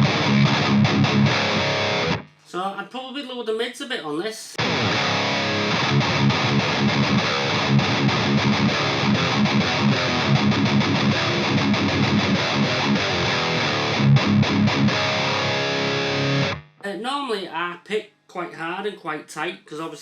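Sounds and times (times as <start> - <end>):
distorted electric guitar riff: 0.0 - 2.5, 4.6 - 16.8.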